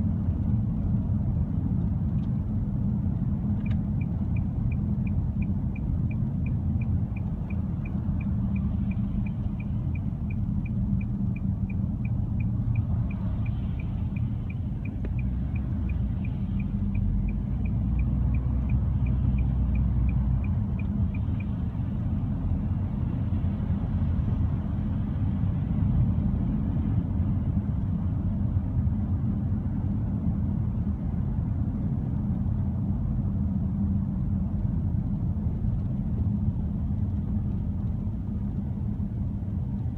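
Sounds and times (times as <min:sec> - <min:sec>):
road and engine rumble: 0:00.0 - 0:39.9
light regular ticking: 0:03.4 - 0:21.6.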